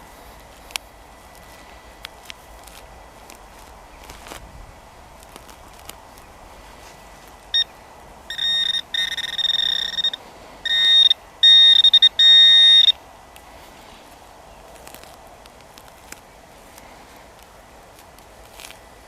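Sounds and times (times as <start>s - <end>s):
metal detector beeps: 7.5s - 13.0s.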